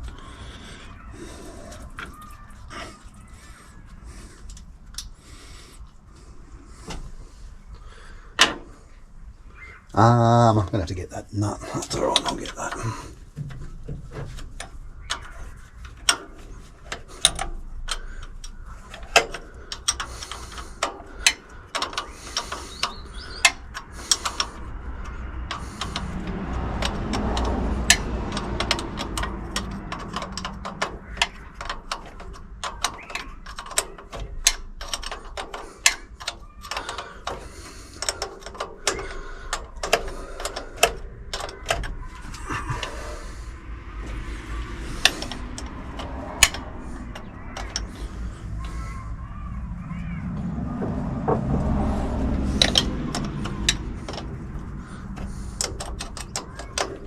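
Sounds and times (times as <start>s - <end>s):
sharp metal clicks and taps: 8.4s - 8.8s, 11.8s - 49.2s, 50.4s - 57.0s
hand ratchet clicking: 11.9s - 49.2s, 51.5s - 57.0s
low rumble: 43.5s - 55.2s.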